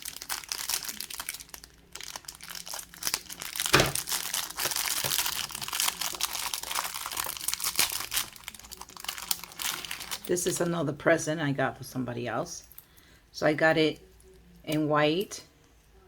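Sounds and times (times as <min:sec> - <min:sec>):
plastic bags crinkling: 0:00.0 - 0:10.8.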